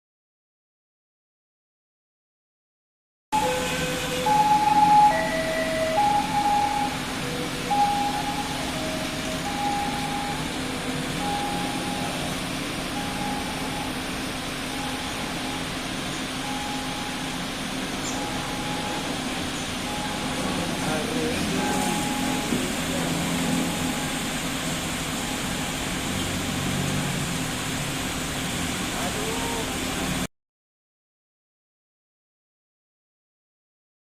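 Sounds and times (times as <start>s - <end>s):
electronic beeping melody: 3.4s - 24.5s.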